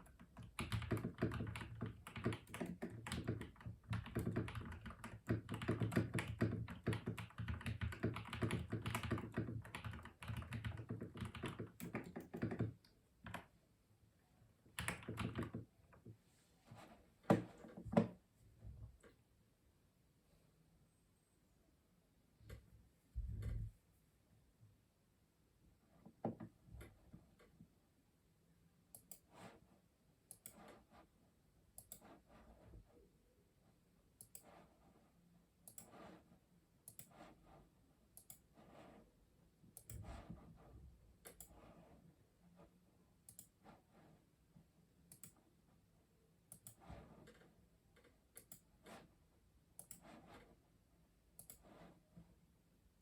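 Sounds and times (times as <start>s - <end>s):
mechanical keyboard keystrokes: 0.2s - 13.4s, 14.8s - 15.6s.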